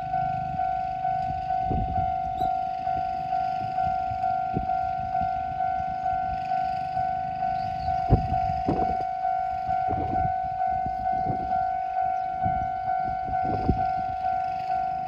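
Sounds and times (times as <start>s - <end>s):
level-crossing warning bell: 0.0s - 15.0s.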